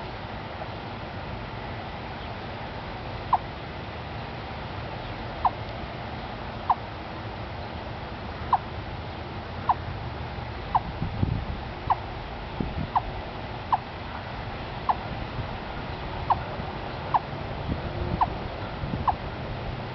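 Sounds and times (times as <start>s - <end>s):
chipmunk clucking call: 5.4s - 5.6s, 6.6s - 6.9s, 8.5s - 8.7s, 9.6s - 9.8s, 10.7s - 10.9s, 11.8s - 12.1s, 12.9s - 13.1s, 13.7s - 13.9s, 14.8s - 15.1s, 16.2s - 17.3s, 18.2s - 18.4s, 19.0s - 19.3s.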